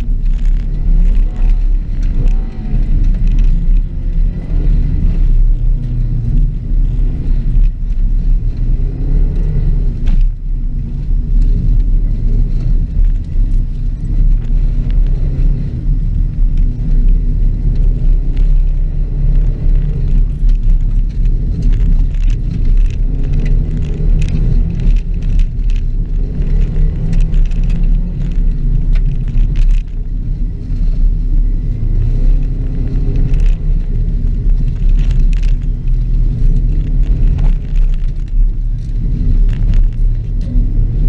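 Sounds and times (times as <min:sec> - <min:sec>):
rally car engine revving: 0:00.0 - 0:41.0
clicks and rattles: 0:09.3 - 0:41.0.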